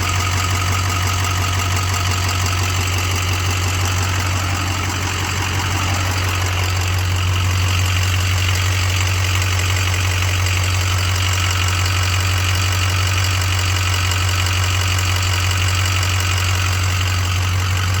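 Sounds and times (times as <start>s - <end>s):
diesel engine ticking knock: 0.0s - 18.0s.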